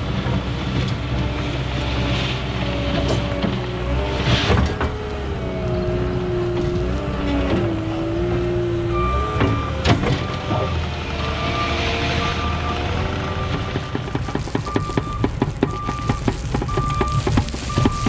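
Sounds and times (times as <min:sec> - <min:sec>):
diesel engine under load: 0:00.0 - 0:18.0
backup alarm beeping: 0:08.9 - 0:18.0.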